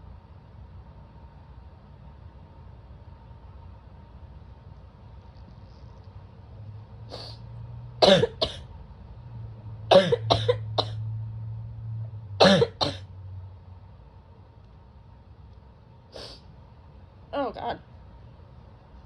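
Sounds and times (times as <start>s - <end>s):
person coughing harshly: 8.0s - 8.7s, 9.9s - 11.0s, 12.4s - 13.1s.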